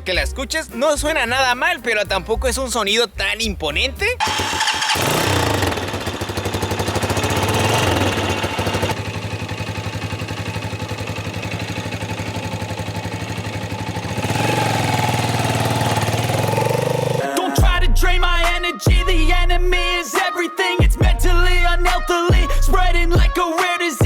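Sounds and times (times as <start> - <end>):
motorcycle engine idling and revving: 4.2 - 19.8.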